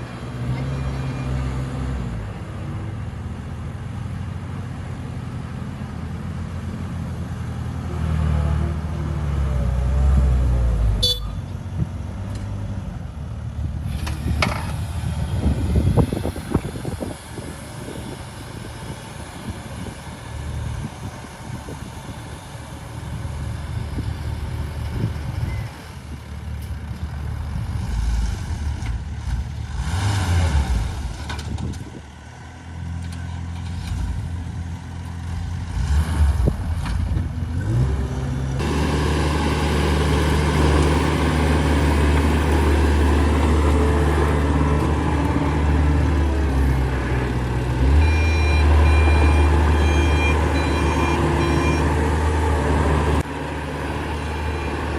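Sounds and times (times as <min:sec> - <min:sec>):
heavy diesel machinery engine: 0:00.0 - 0:54.9
reversing alarm beeping: 0:48.0 - 0:52.0.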